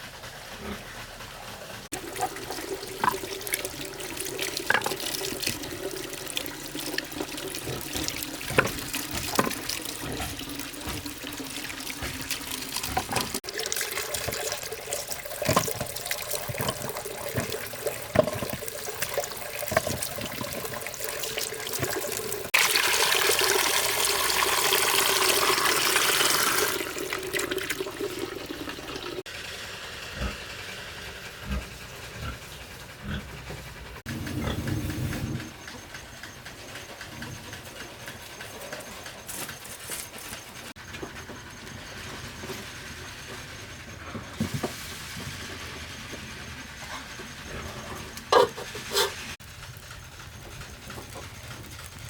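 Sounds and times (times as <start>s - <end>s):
things clattering in water: 1.9s - 29.3s, 44.0s - 49.4s
water running from a tap: 1.9s - 29.3s.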